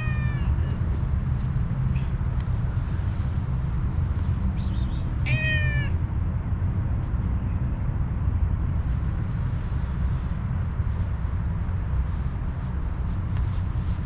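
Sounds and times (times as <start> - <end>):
cat meowing: 0.0 - 0.8, 5.2 - 6.0
steady low rumble: 0.0 - 14.0.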